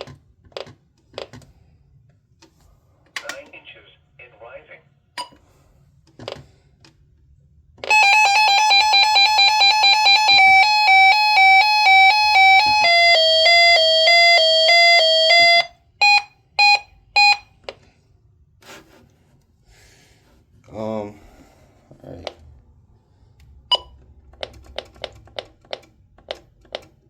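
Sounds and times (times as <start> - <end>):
pulsing electronic alert siren: 7.9 - 17.4
short beeps: 13.7 - 17.5.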